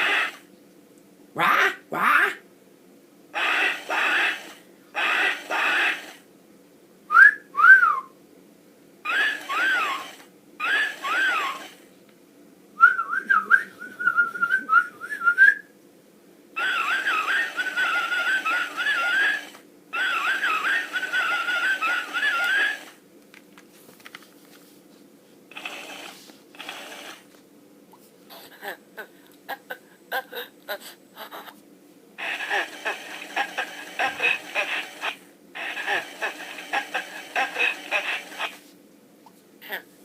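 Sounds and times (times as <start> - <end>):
person whistling: 7.1 - 8.1, 12.8 - 15.7
toy repeating whistles: 9.1 - 11.7, 16.6 - 22.9.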